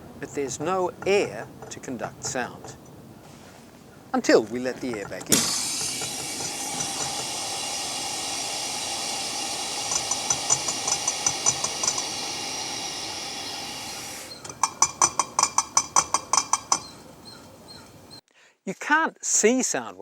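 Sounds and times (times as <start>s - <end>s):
air hissing into glass jar: 5.3s - 15.6s.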